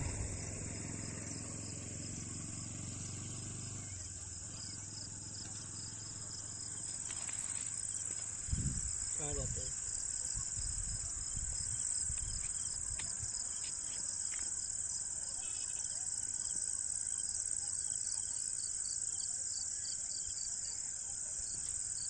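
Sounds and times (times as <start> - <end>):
low rumbling: 0.0 - 5.2, 8.4 - 9.7.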